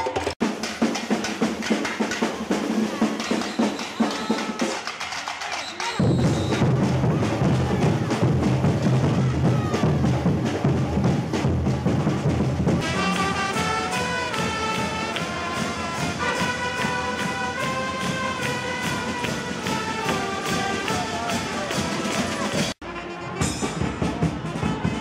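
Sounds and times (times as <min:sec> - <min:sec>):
steady drumbeat: 0:00.0 - 0:25.0
brass playing held notes: 0:12.8 - 0:25.0.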